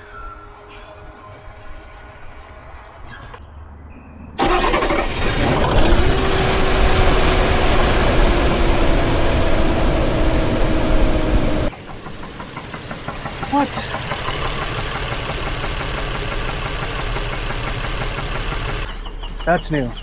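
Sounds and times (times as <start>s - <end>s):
car engine running with whine: 4.4s - 19.9s.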